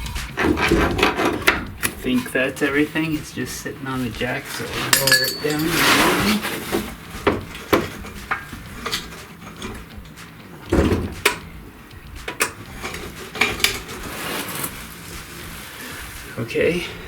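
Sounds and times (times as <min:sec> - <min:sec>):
metal clinks and knocks: 0:04.4 - 0:14.1
heavy metal thump: 0:10.6 - 0:12.4.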